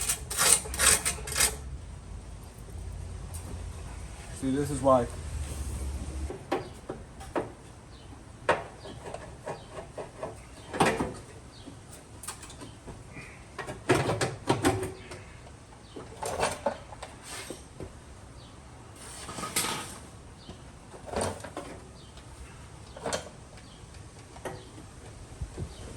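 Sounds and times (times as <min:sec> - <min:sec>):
tools and parts clanking: 0:00.0 - 0:01.7, 0:08.5 - 0:13.0, 0:13.6 - 0:15.3, 0:15.9 - 0:17.8, 0:20.9 - 0:25.2.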